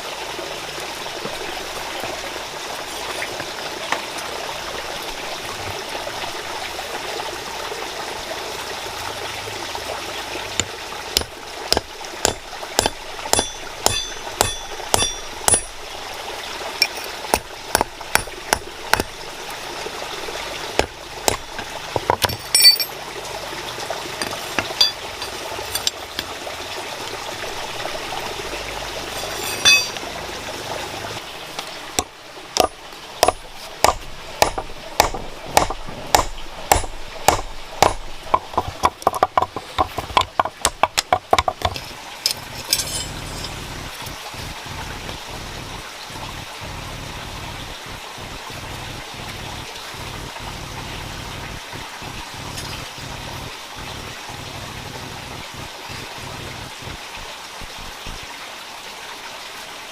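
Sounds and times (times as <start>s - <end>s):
running water: 0.0s - 59.9s
hammering on metal: 10.6s - 15.8s, 17.3s - 19.2s, 32.6s - 41.8s.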